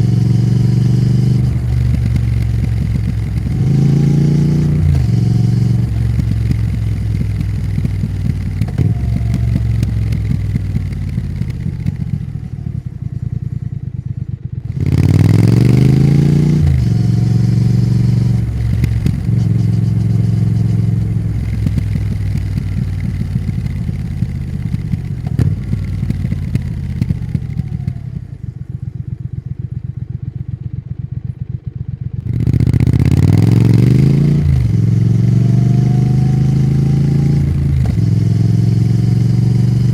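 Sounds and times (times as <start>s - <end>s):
exhaust popping crackle: 0.0s - 12.4s, 16.6s - 28.1s
motorcycle engine pulling hard: 0.0s - 13.3s, 14.6s - 28.8s, 32.2s - 39.9s.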